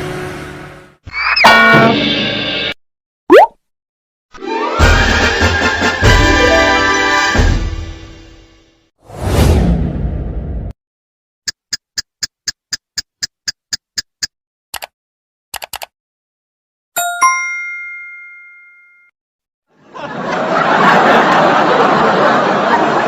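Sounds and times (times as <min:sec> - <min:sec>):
quick high beeps: 0:03.3 - 0:03.5
bright ding: 0:17.0 - 0:19.1.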